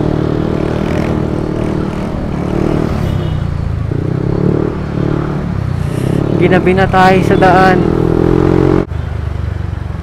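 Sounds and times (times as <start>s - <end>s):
wind and road noise: 0.0s - 10.0s.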